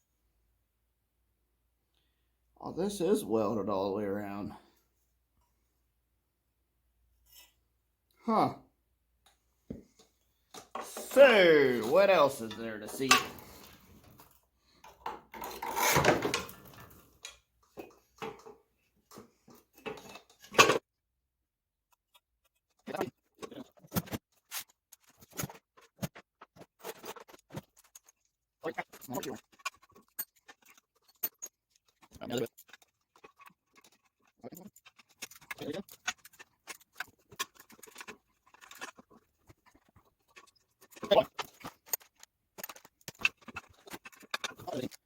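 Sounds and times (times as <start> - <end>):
metal tools clinking and scraping: 10.5 - 18.6, 19.8 - 20.8
metal tools clicking and tapping: 10.6 - 13.8.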